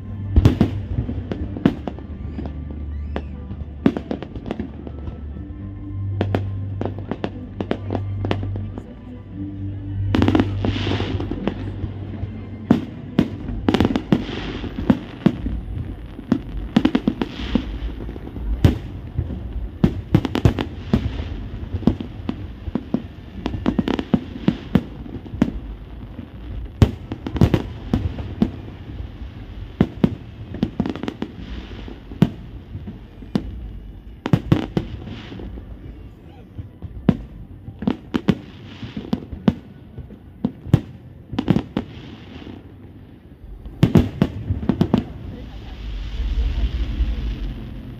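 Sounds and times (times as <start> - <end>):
fireworks bangs: 0.1 - 5.2, 10.1 - 47.9
fireworks crackling hiss: 10.1 - 47.9.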